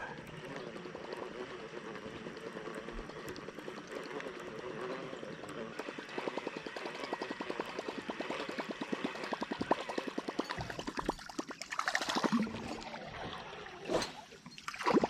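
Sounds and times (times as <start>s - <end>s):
lure plopping and gurgling: 0.1s - 15.0s
water splash: 6.1s - 15.0s.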